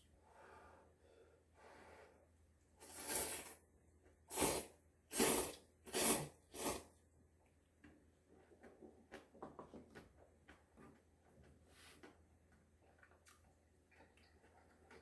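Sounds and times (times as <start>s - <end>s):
person slurping noodles: 2.8s - 3.6s, 4.3s - 6.9s.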